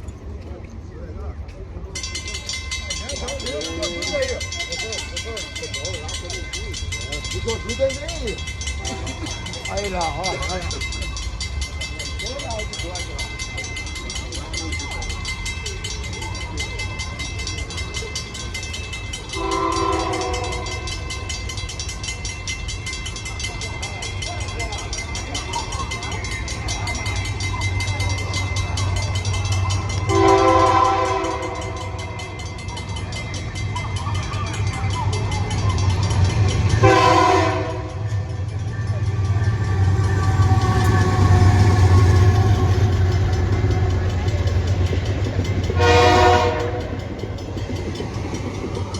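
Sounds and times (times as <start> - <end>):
diesel locomotive engine rumbling: 0.0 - 48.9
freight train clattering: 0.0 - 48.9
locomotive horn blast: 19.4 - 20.9, 30.1 - 32.0, 36.8 - 38.1, 45.8 - 46.9.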